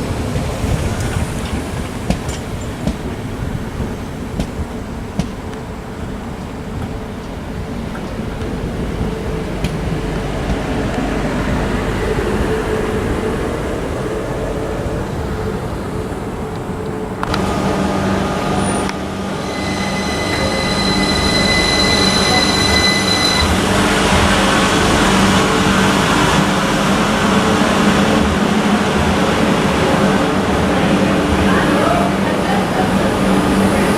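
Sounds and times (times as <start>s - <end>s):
electric train running: 0.0s - 33.9s
high-pitched tone: 19.2s - 24.5s.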